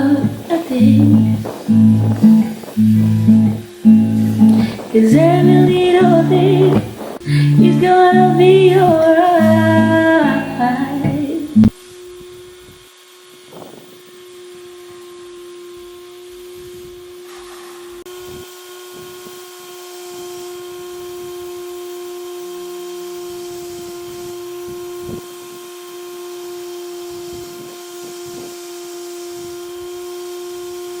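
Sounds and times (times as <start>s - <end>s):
steady hum: 0.0s - 28.6s.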